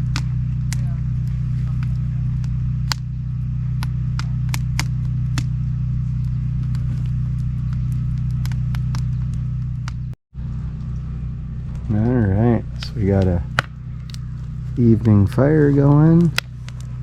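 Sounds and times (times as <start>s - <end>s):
campfire crackling and popping: 0.0s - 17.0s
steady low hum: 0.0s - 17.0s.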